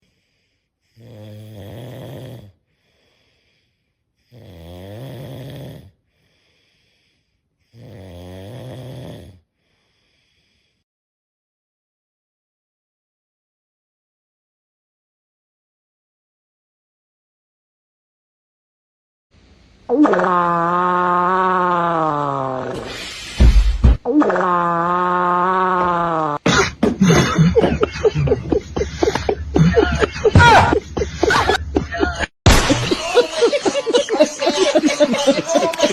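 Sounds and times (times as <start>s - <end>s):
quiet breathing: 0.0s - 1.2s, 2.5s - 4.4s, 5.8s - 7.9s, 9.4s - 10.8s
person snoring: 0.9s - 3.6s, 4.2s - 10.8s, 20.0s - 23.5s
faint hiss: 21.0s - 23.8s.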